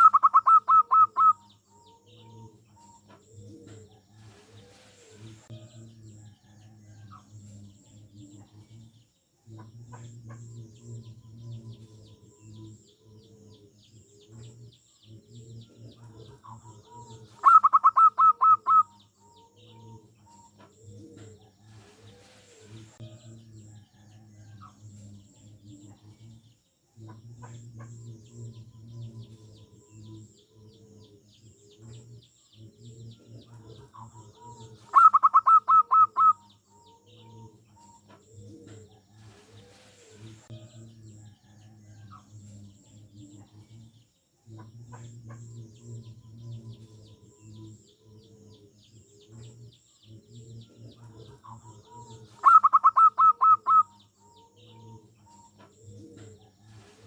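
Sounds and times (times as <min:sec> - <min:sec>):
dove staccato cooing: 0:00.0 - 0:05.5, 0:09.6 - 0:23.0, 0:27.0 - 0:40.5, 0:44.6 - 0:57.0.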